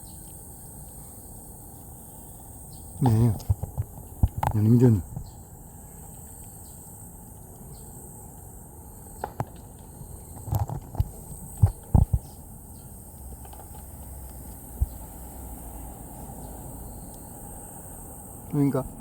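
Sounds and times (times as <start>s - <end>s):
steady background hiss: 0.0s - 19.0s.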